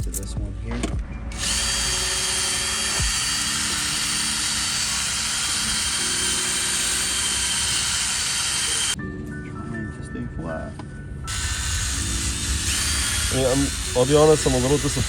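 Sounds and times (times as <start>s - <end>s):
electric drill sanding plastic: 1.3s - 9.0s, 11.3s - 15.0s.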